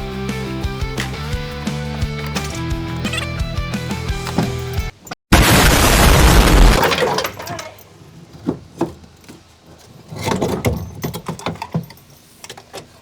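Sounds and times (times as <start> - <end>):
clicks and rattles of hand work: 2.1 - 5.2, 6.8 - 13.0
loud noise: 5.3 - 7.0.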